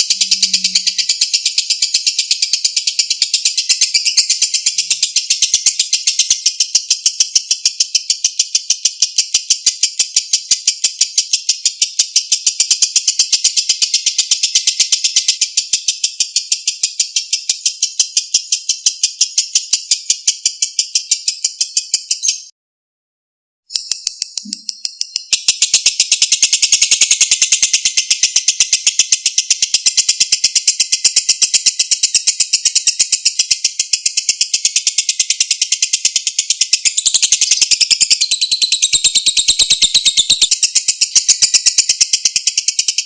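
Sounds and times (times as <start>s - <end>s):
lovebird shrill chattering: 0.0s - 6.7s, 33.5s - 43.0s.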